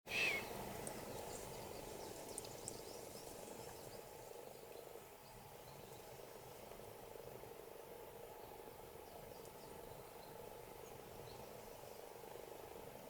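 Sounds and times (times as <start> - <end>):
small birds chipping: 0.3 - 6.0.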